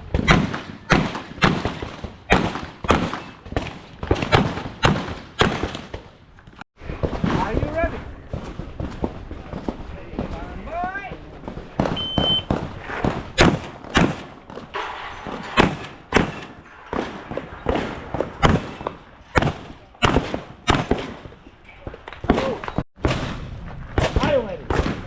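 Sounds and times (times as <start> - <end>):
shotgun shots with echo: 0.1 - 6.0, 11.6 - 21.4, 22.2 - 25.0.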